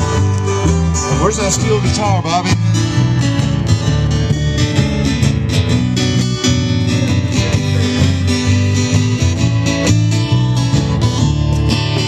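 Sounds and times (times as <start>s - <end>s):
steel guitar lead: 0.0s - 12.0s
strummed acoustic guitar: 0.0s - 12.0s.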